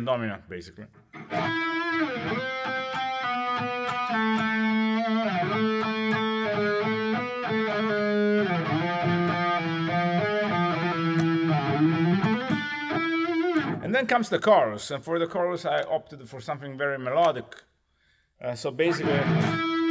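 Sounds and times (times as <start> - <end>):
electric guitar metal melody: 1.2 - 13.8, 18.9 - 19.9.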